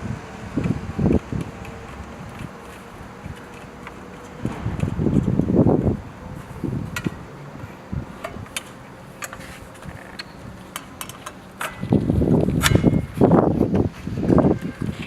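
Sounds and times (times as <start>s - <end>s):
handling clicks and ticks: 0.5s - 5.5s, 8.2s - 13.0s.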